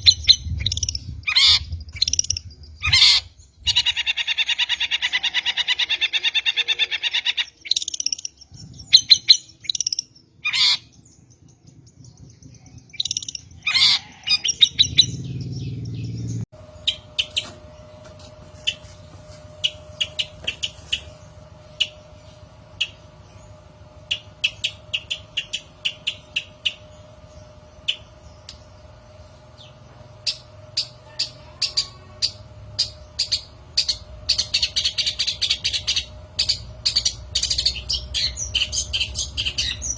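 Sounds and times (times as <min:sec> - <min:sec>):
bird harsh chatter: 0:00.1 - 0:08.4, 0:09.0 - 0:11.0, 0:13.0 - 0:15.1, 0:18.2 - 0:22.0, 0:30.2 - 0:39.9
faint steady hum: 0:16.5 - 0:39.9.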